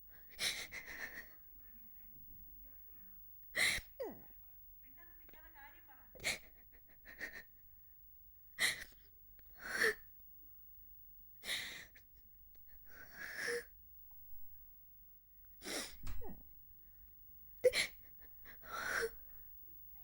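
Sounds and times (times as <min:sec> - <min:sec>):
woman sobbing: 0:00.3 - 0:01.9, 0:03.6 - 0:04.3, 0:06.1 - 0:07.6, 0:17.6 - 0:19.4
sniffles: 0:03.5 - 0:04.2, 0:06.2 - 0:07.4, 0:15.6 - 0:16.2.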